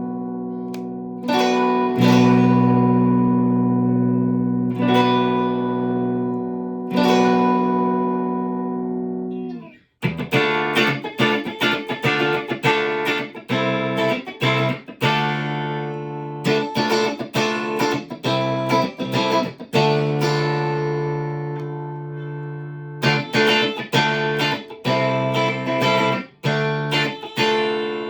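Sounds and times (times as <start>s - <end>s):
clean electric guitar playing: 0.0s - 28.0s.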